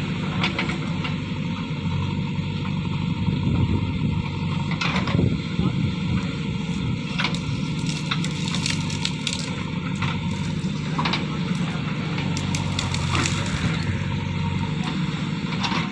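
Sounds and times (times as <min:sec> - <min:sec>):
diesel engine running: 0:00.0 - 0:15.9
sharp cracks and crunches: 0:06.2 - 0:14.2.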